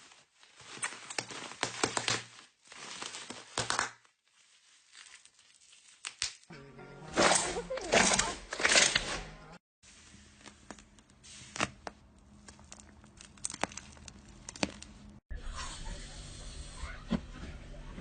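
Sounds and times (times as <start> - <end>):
slime squeezed crackling: 11.4 - 15.2.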